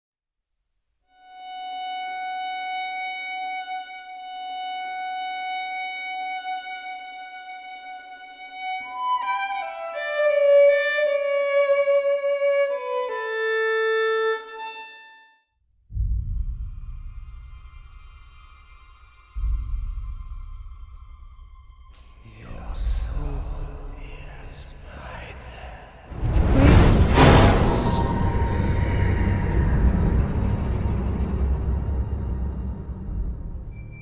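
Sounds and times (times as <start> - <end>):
solo violin: 1.1 - 15.4
low rumble: 15.9 - 34.0.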